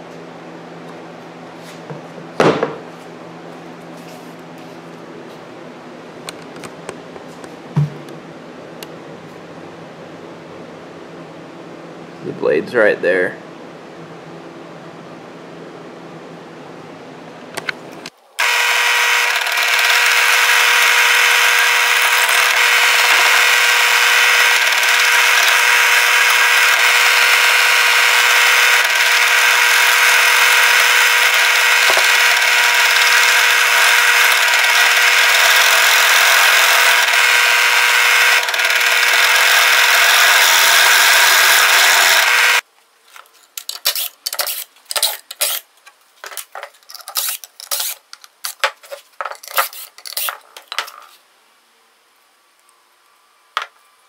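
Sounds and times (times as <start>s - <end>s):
electric power tool whining: 18.4s - 42.6s
small parts clicking and clattering: 43.2s - 45.6s, 46.2s - 51.2s.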